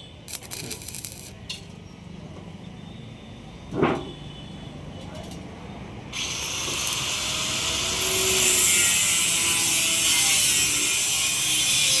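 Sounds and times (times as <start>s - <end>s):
welding arc crackling and sizzling: 0.2s - 1.7s, 6.2s - 12.0s.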